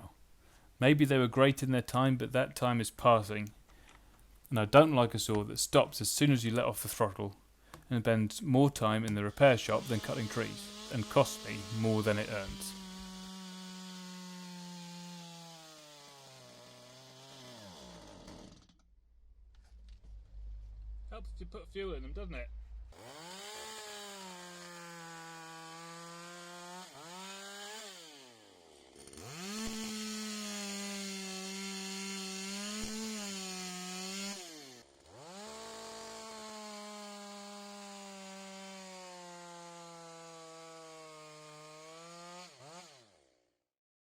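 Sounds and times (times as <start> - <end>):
chainsaw running at high revs: 9.2 - 18.7, 23.0 - 43.3.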